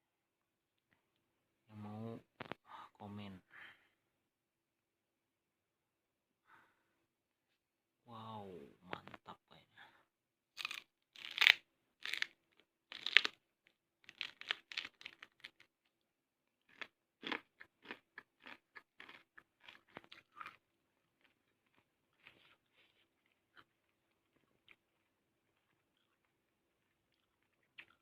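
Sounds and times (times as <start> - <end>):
crunchy fruit chewing: 10.6 - 13.4, 14.0 - 15.7, 16.7 - 20.6.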